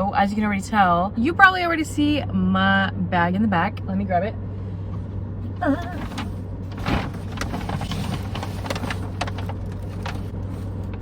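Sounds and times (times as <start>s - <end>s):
car engine idling: 4.6s - 11.0s
food bag crinkling and rustling: 5.8s - 11.0s.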